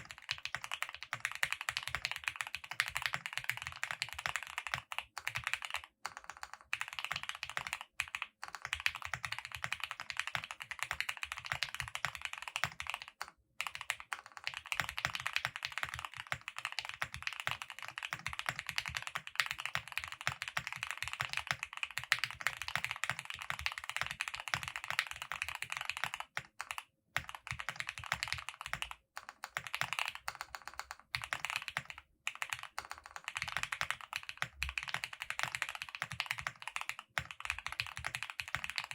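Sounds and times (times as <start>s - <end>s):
typing on mechanical keyboard: 0.0s - 38.9s.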